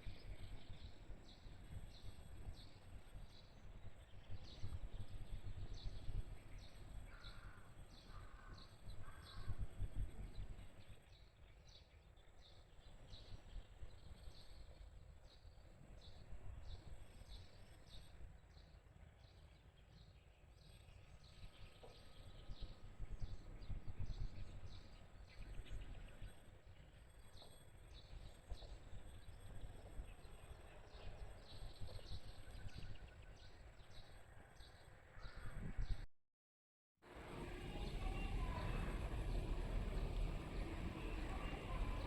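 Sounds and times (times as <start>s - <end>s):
low outdoor rumble: 37.1s - 42.0s
small birds chirping: 37.2s - 42.0s.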